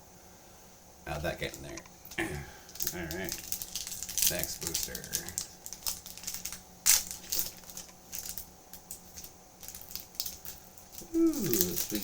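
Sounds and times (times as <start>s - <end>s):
foil wrapper crinkling and tearing: 2.7s - 12.0s
loud crackle: 2.7s - 12.0s.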